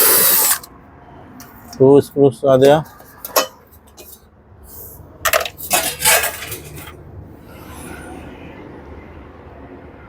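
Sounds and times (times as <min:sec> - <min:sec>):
screwdriver and screws clattering: 0:05.3 - 0:07.0.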